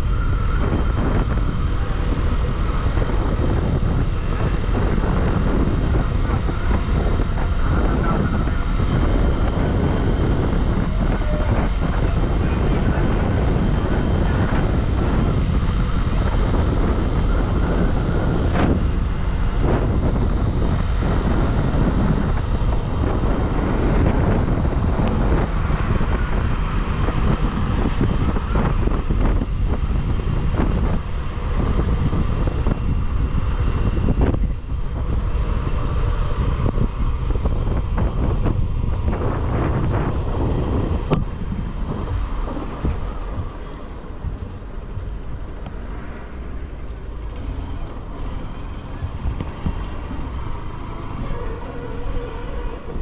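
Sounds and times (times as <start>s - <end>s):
wind buffeting microphone: 0.0s - 53.0s.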